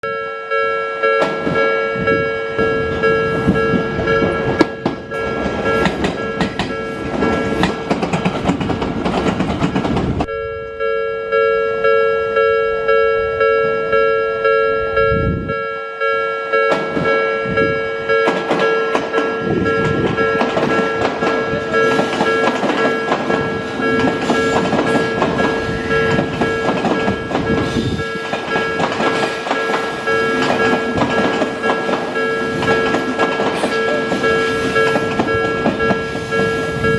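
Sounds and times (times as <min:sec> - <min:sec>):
level crossing warning bell: 0:00.0 - 0:08.8, 0:10.2 - 0:36.9
train wheels clattering over rail joints: 0:02.9 - 0:10.3, 0:18.2 - 0:36.9.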